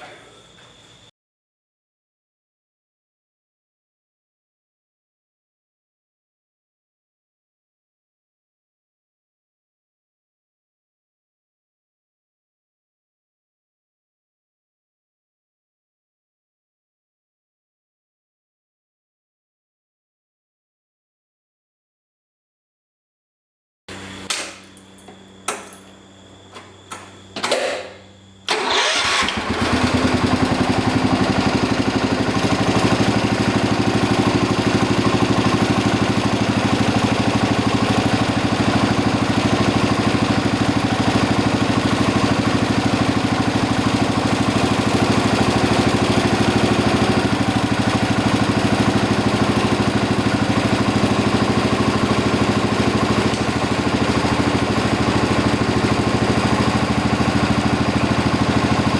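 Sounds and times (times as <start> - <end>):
tractor engine cranking and running: 28.5 - 58.9.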